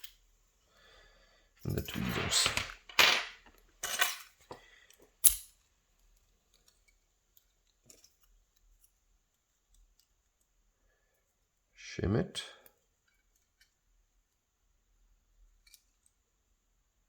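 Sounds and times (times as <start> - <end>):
metal tools clattering: 1.6 - 4.6.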